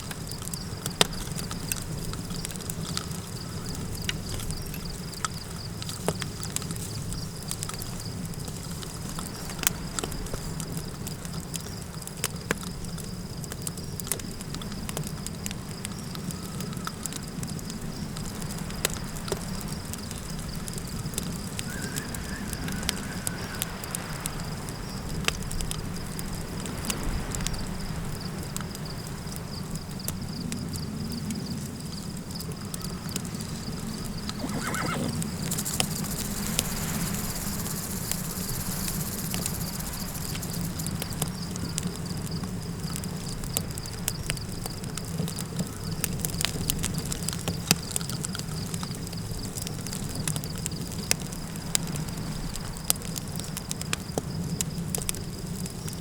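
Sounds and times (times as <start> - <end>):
campfire crackling: 0.0 - 26.8, 30.9 - 52.0
low wind rush: 33.4 - 41.5
horse whinnying: 34.3 - 35.9.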